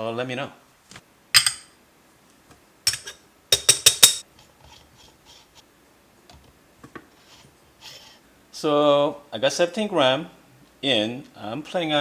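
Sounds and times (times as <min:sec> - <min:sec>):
metal espresso tools clinking: 0:01.4 - 0:01.7, 0:02.9 - 0:04.2.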